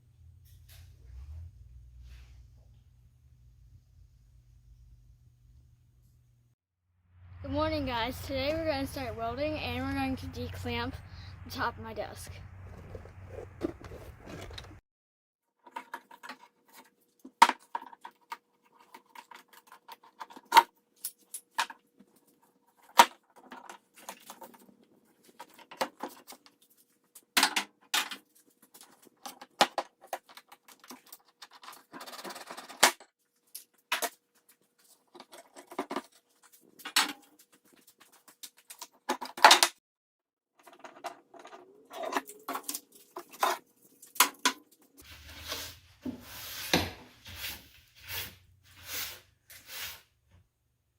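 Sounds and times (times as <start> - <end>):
scraping rush: 12.1 - 14.8.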